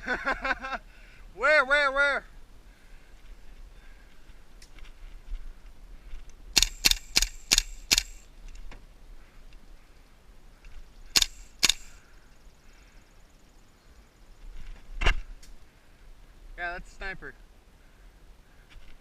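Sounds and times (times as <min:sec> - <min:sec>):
airsoft rifle single shots: 0:06.6 - 0:08.2, 0:11.2 - 0:12.0.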